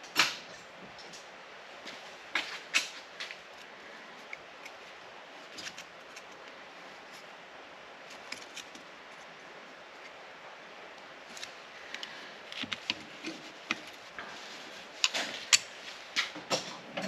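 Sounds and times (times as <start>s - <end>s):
hand tool clicking on metal: 15.0s - 15.7s.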